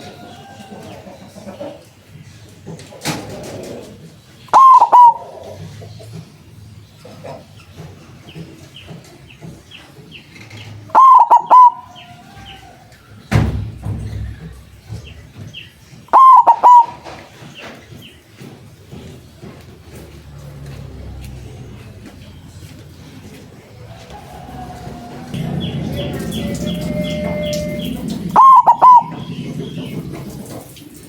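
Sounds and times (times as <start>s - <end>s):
dove cooing: 3.2s - 6.2s, 10.4s - 12.9s, 16.1s - 17.7s, 23.6s - 30.8s
small birds chirping: 4.2s - 13.4s, 14.0s - 18.4s, 21.1s - 30.8s
dull thump: 13.3s - 15.2s.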